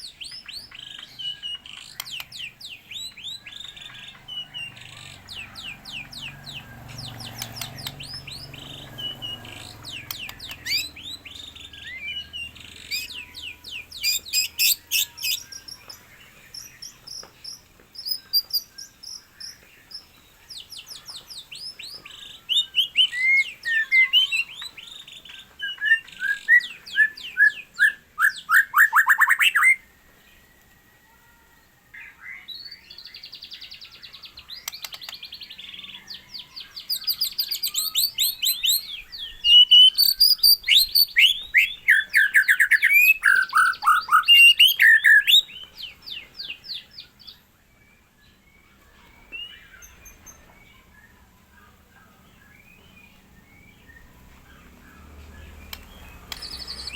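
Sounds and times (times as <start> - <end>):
songbird singing: 0.0 - 56.9.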